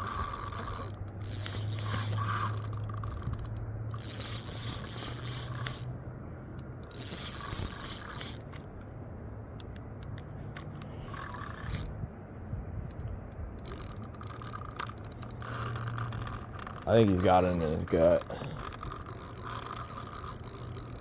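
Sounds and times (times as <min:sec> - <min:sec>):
fishing reel ratcheting: 0:00.0 - 0:05.9, 0:06.6 - 0:08.7, 0:09.6 - 0:11.9, 0:12.9 - 0:21.0.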